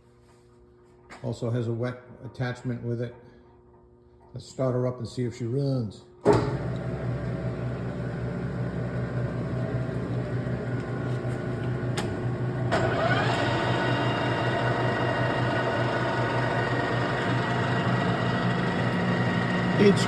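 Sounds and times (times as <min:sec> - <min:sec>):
metal lathe motor humming: 0:06.5 - 0:20.0
gear whine: 0:06.8 - 0:20.0.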